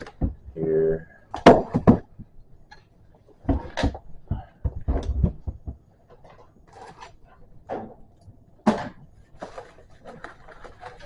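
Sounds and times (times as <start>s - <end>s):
bicycle parts knocking and clunking: 1.3s - 7.1s
packaging rustling: 9.2s - 11.0s.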